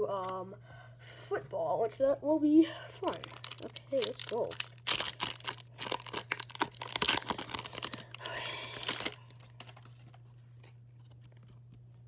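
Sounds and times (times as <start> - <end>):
wrapper tearing and crinkling: 3.0 - 12.0.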